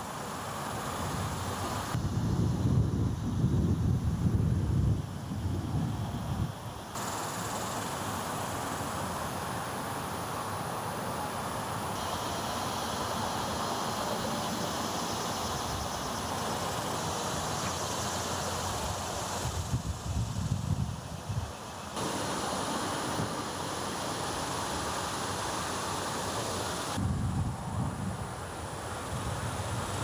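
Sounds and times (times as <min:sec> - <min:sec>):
continuous rushing hiss: 0:00.0 - 0:30.0
wind rumble on microphone: 0:01.1 - 0:06.8, 0:19.4 - 0:21.5, 0:27.0 - 0:30.0.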